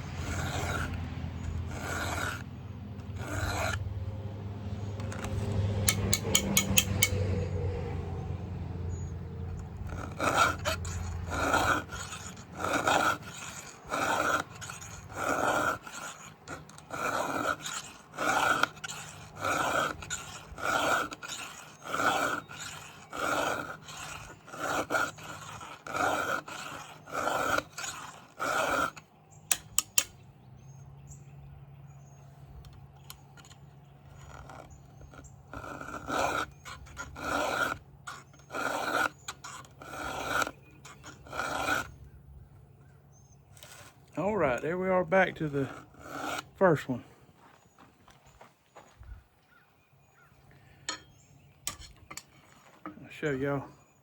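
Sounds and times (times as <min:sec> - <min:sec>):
round file rasping on chainsaw chain: 0:00.0 - 0:30.2, 0:32.5 - 0:42.5, 0:43.5 - 0:47.6
sharp clicks: 0:29.4 - 0:30.2.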